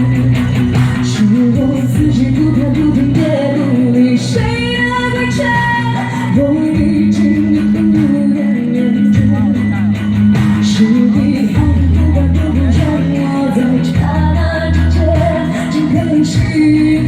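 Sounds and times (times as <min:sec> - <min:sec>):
guitar-led band: 0:00.0 - 0:17.0
person singing: 0:00.0 - 0:17.0.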